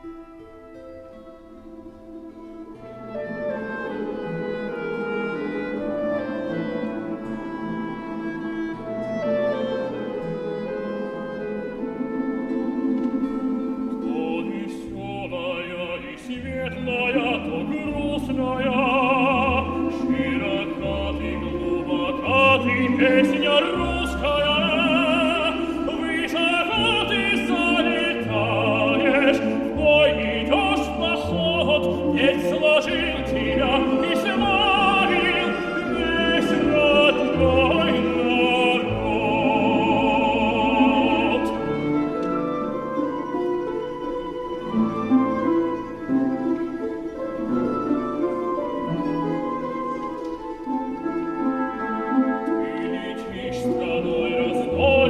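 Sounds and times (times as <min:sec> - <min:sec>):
folk string orchestra: 0:00.0 - 0:55.0
person singing with vibrato: 0:14.0 - 0:41.9.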